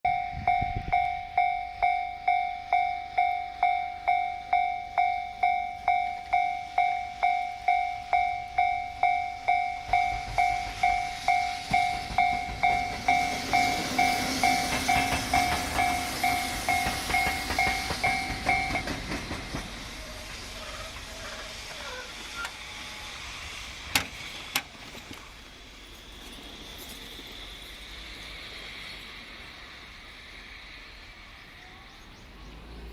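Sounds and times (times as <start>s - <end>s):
two-tone crossing warning bell: 0.1s - 19.6s
locomotive passing: 0.1s - 32.9s
wheels clattering over rail joints: 9.9s - 22.6s.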